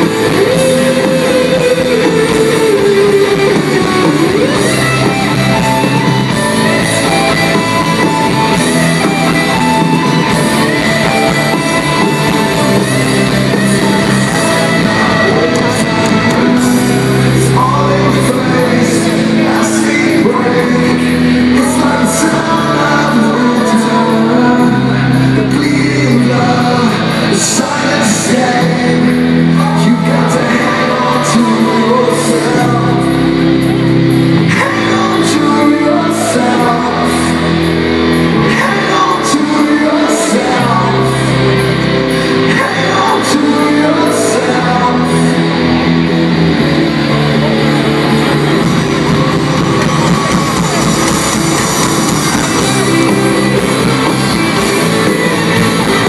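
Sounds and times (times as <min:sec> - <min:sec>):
man singing lead vocal: 0:00.0 - 0:46.3
live rock band playing: 0:00.0 - 0:56.0.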